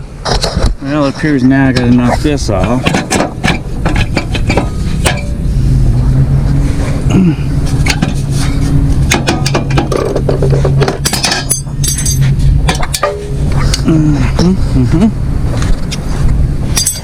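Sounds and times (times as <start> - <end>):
steady low hum: 0.0 - 17.0
metal tools clinking on metal: 9.1 - 13.5, 16.7 - 17.0.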